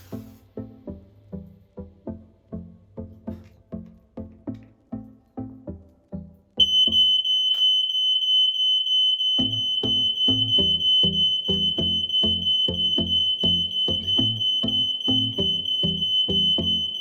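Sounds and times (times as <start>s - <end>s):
smoke alarm high-pitched tone: 6.6s - 17.0s.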